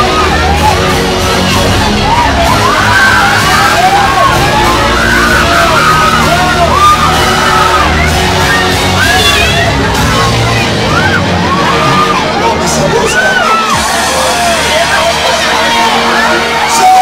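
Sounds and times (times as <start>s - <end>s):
crowd yelling and whooping: 0.0s - 17.0s
loud party music with bass: 0.0s - 17.0s.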